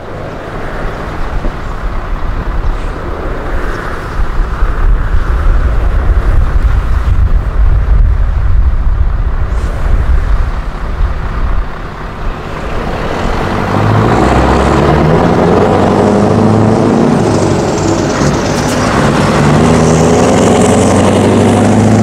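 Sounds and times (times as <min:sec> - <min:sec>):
diesel truck engine rumbling: 0:00.0 - 0:22.0.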